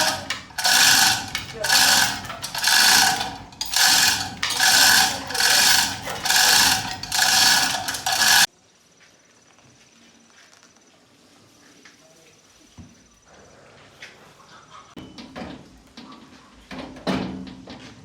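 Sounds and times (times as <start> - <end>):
hand tool strokes on metal: 0.0 - 8.5.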